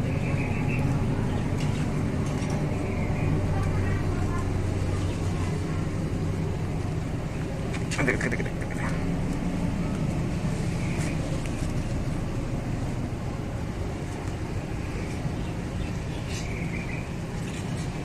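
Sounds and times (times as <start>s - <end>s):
low mechanical hum: 0.0s - 18.0s.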